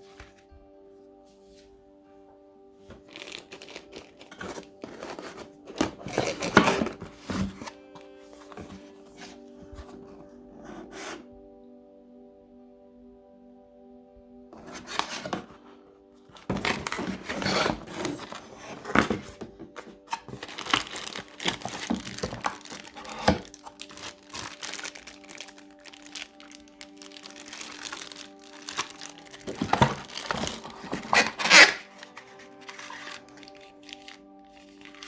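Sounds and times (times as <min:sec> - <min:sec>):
background music with held tones: 0:00.0 - 0:35.0
packaging crinkling and tearing: 0:03.0 - 0:07.8, 0:08.4 - 0:10.0, 0:14.6 - 0:15.4, 0:16.4 - 0:35.0.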